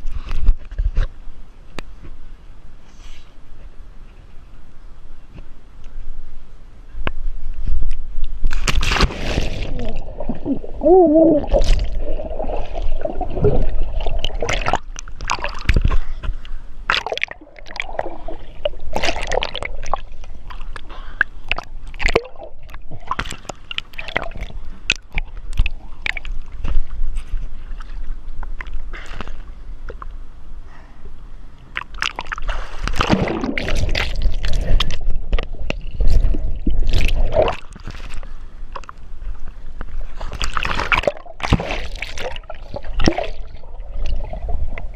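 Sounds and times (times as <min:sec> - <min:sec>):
water splashing and gurgling: 0:08.4 - 0:29.1, 0:31.7 - 0:44.9.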